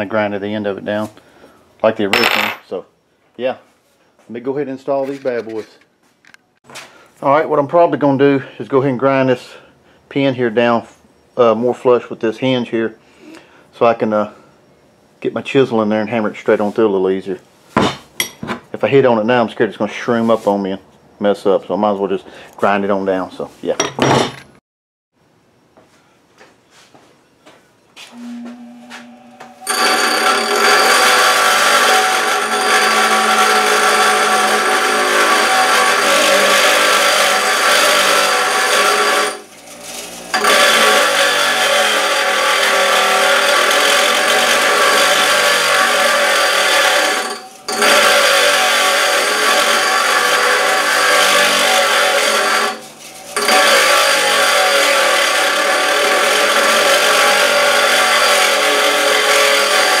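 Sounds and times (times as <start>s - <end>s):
power grinder grinding metal: 28.2s - 60.0s.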